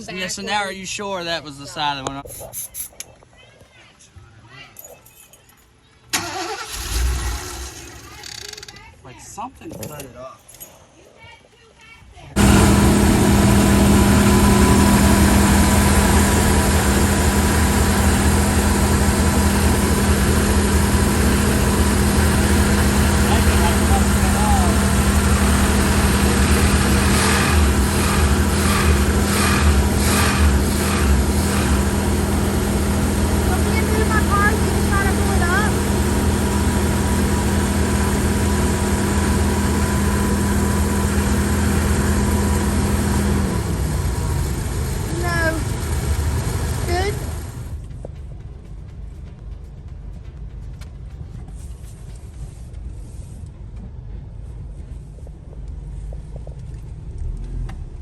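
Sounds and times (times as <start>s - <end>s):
engine idling with low hum: 12.4s - 58.0s.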